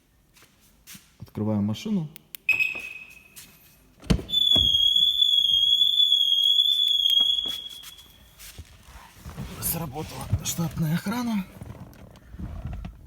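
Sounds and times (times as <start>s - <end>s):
high-pitched car alarm tone: 2.5s - 3.4s, 4.3s - 8.4s.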